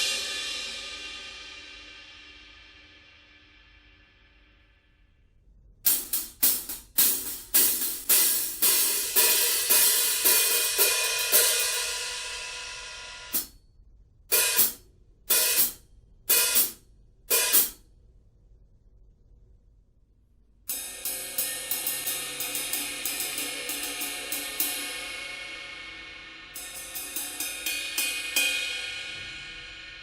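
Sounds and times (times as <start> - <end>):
choked cymbal hits: 0.0 - 3.9, 20.7 - 30.0
china cymbal struck: 0.0 - 4.3, 20.7 - 30.0.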